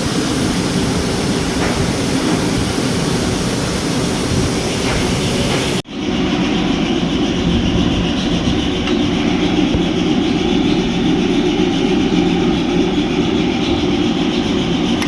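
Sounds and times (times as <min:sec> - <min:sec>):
engine running with knocking: 0:00.0 - 0:15.0.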